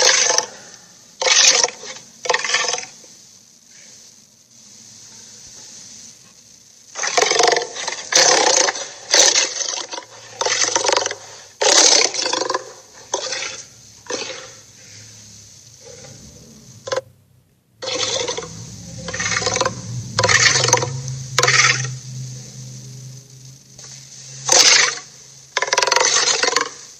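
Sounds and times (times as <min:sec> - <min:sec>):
rough monster growl bursts: 0:07.0 - 0:17.0, 0:17.8 - 0:26.8.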